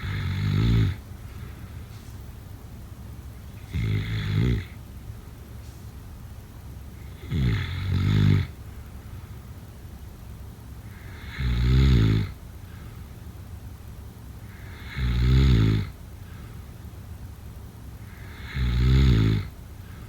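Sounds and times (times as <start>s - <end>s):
person snoring: 0.0s - 1.0s, 3.6s - 4.8s, 7.1s - 8.5s, 14.5s - 15.9s, 18.2s - 19.5s
low background noise: 0.0s - 20.0s.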